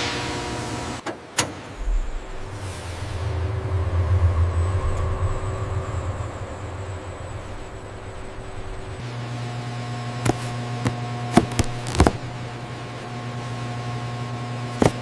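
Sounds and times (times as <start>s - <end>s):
faint high whine: 1.7s - 14.7s
low machine hum: 1.7s - 15.0s.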